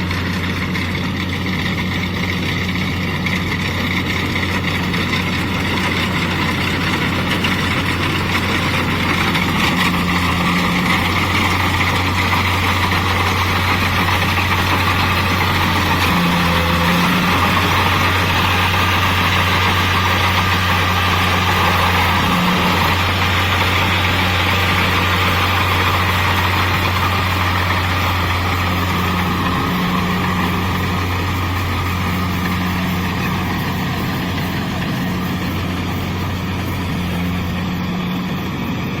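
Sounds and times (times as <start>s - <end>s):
diesel engine hum: 0.0s - 39.0s
machinery hissing: 0.0s - 39.0s.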